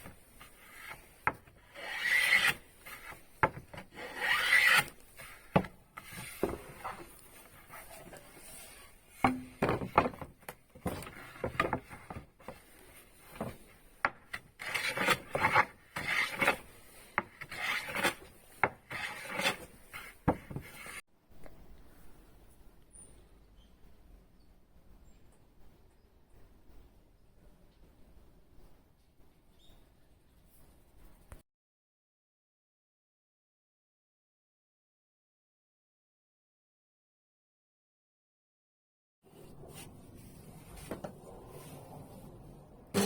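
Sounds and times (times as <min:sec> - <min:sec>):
wood rubbed with abrasive tool: 0:01.7 - 0:03.1, 0:04.0 - 0:05.3.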